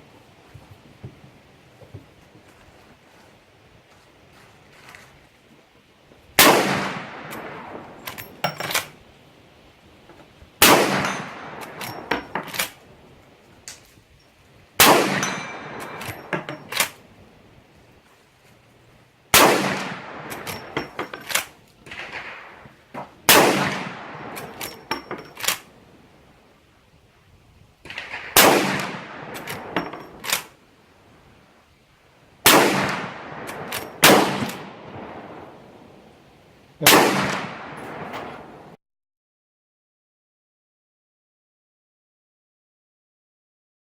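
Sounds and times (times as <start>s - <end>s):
rifle shots with echo: 6.4s - 8.9s, 10.6s - 12.8s, 14.8s - 17.0s, 19.3s - 24.9s, 27.9s - 30.5s, 32.4s - 35.8s, 36.8s - 38.8s
sharp metallic clicks and clinks: 8.0s - 9.0s, 11.0s - 12.8s, 15.2s - 17.0s, 20.3s - 21.5s, 24.4s - 25.7s, 29.4s - 30.5s, 37.8s - 38.5s.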